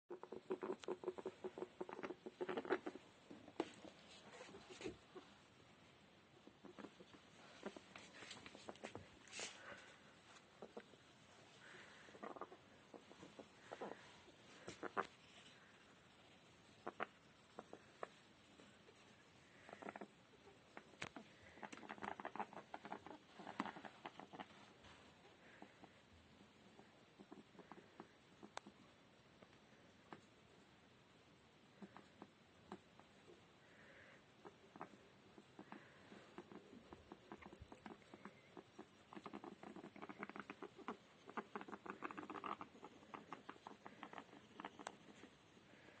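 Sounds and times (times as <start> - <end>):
rat snoring with crackling clicks: 19.5 - 24.6, 33.7 - 46.0.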